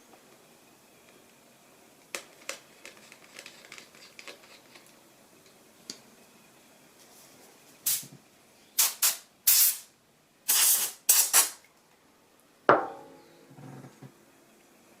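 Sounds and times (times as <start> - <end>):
hissing bursts of air: 7.8 - 8.2, 8.8 - 11.6.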